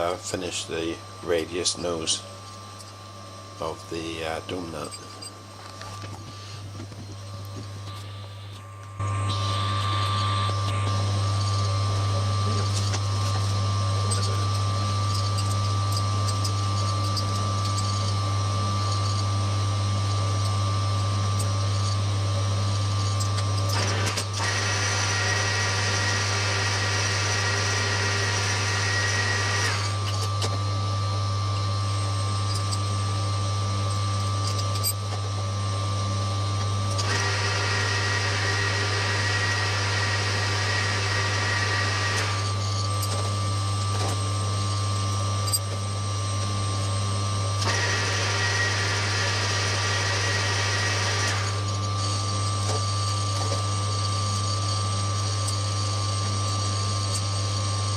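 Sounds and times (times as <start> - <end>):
high whine with hiss: 0.0 - 2.6, 3.3 - 19.4
metal lathe motor hum: 0.0 - 57.9.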